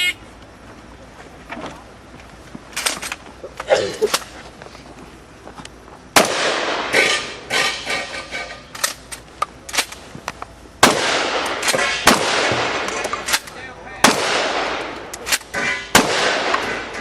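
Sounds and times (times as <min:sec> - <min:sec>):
shotgun shots echoing: 0:06.2 - 0:07.9, 0:10.8 - 0:17.0.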